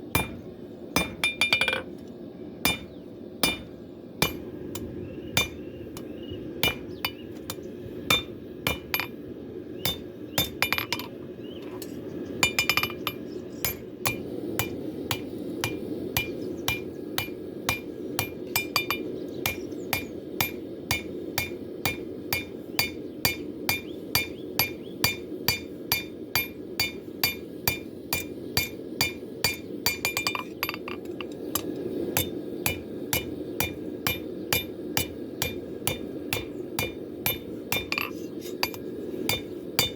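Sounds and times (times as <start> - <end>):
hammer striking steel on anvil: 0.2 - 1.9, 2.7 - 9.2, 9.8 - 11.2, 12.4 - 39.9.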